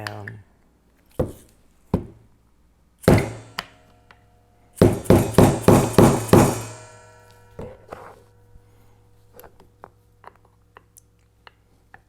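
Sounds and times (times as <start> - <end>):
hammer striking metal punch: 3.0 - 4.0, 4.8 - 8.1.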